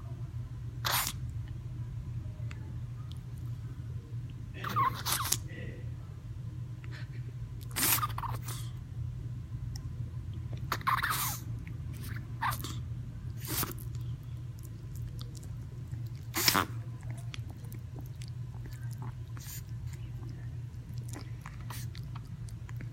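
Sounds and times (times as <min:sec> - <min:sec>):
small dog sneezing: 0:00.8 - 0:01.2, 0:04.6 - 0:05.5, 0:07.6 - 0:08.7, 0:10.7 - 0:12.8, 0:13.4 - 0:13.8, 0:16.3 - 0:16.8.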